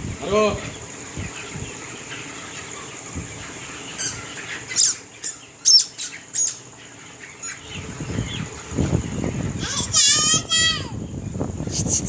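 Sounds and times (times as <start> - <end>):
poultry squawking: 0.0 - 11.0.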